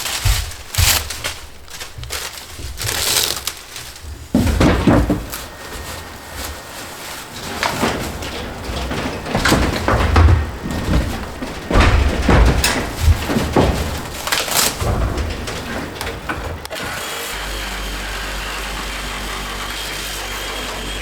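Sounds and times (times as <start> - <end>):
thumps and knocks on wood: 0.0 - 6.7, 7.3 - 16.7
heavy thumps: 0.0 - 16.8
debris scraping: 0.0 - 18.4.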